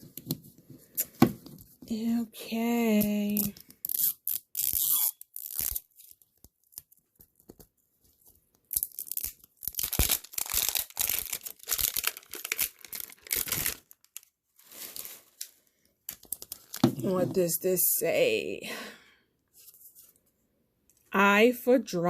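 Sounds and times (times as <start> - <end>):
plastic wrapping tearing and crinkling: 3.2 - 7.4, 8.7 - 17.0.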